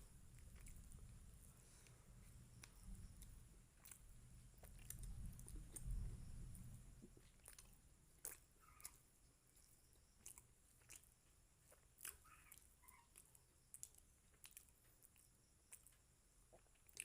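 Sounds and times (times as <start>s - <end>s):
person chewing food: 0.2s - 17.0s
wet mouth clicks and smacks: 7.3s - 9.0s, 10.2s - 11.1s.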